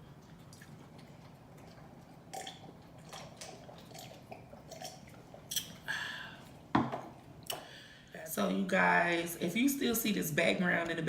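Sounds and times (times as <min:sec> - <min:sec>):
wet mouth chewing sounds: 0:00.0 - 0:05.9.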